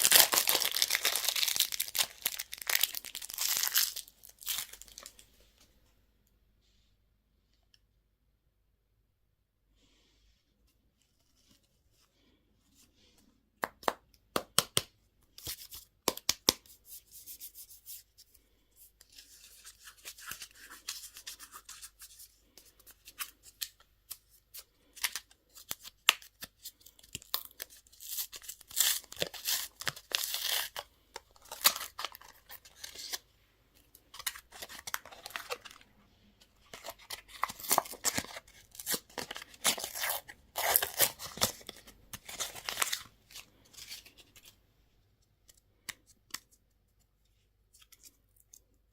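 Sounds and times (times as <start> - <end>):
wrapper crinkling and tearing: 0.0 - 5.2, 24.9 - 33.2, 36.6 - 44.4.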